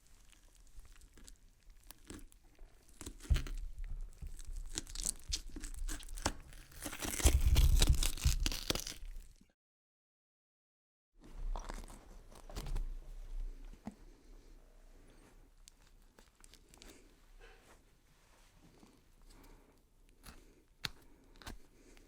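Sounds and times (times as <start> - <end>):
gore tearing and crunching: 0.0 - 9.4.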